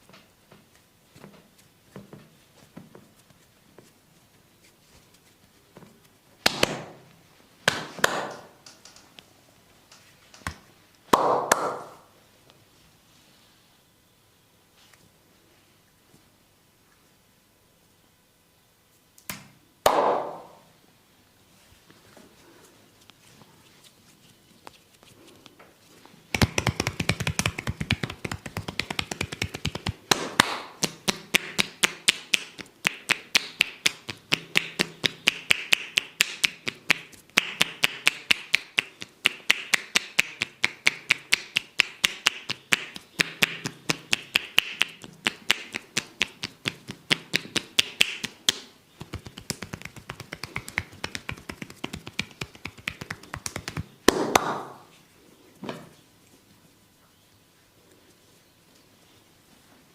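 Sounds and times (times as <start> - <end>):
hands tapping and chopping on body: 26.3 - 54.8.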